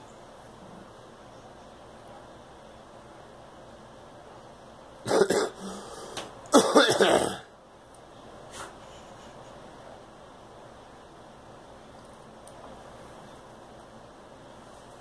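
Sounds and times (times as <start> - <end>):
girl coughing: 6.6 - 7.4.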